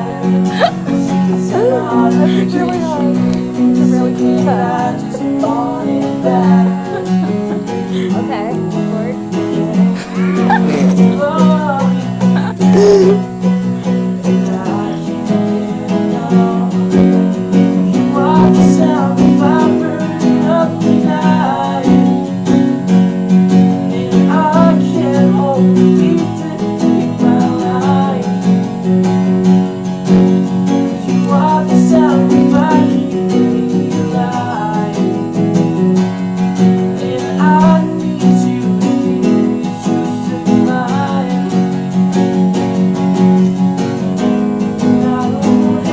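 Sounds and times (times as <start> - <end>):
person singing: 0.0 - 13.3, 14.2 - 22.4, 23.8 - 28.4, 31.0 - 35.3, 36.8 - 41.7, 44.8 - 45.9
acoustic guitar strumming: 0.0 - 45.9.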